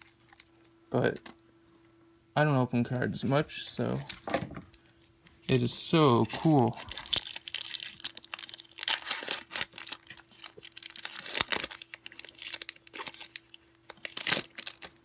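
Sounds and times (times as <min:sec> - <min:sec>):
foil wrapper crinkling and tearing: 0:00.0 - 0:00.7, 0:05.5 - 0:15.0.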